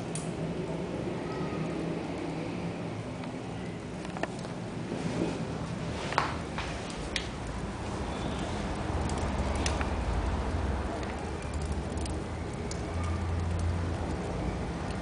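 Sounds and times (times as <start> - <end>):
low steady rumble: 0.0 - 15.0
wood fire crackling and popping: 6.0 - 15.0.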